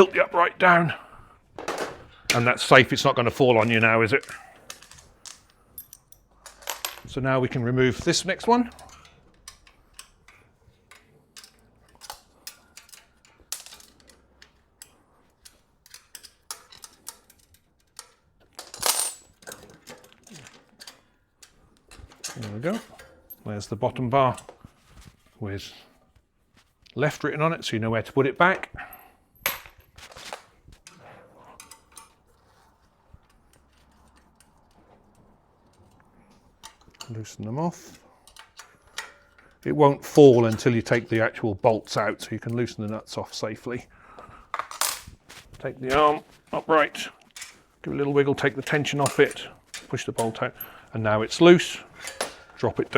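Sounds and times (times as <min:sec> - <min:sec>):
metallic clinks and taps: 0:04.2 - 0:07.1
metallic clicks and knocks: 0:08.0 - 0:23.4.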